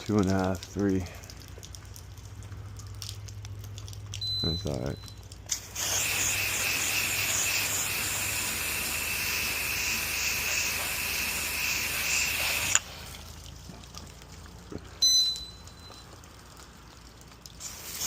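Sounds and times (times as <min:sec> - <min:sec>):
pressure washer spraying water: 0:05.5 - 0:13.1, 0:17.6 - 0:18.0.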